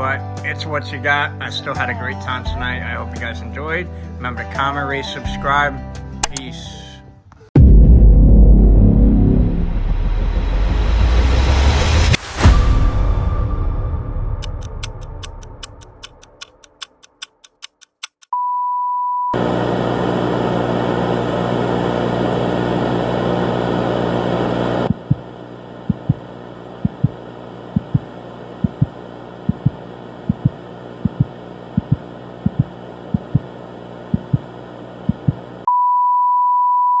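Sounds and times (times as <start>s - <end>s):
evenly spaced ticks: 14.4s - 18.3s
irregular clicks: 14.4s - 18.3s.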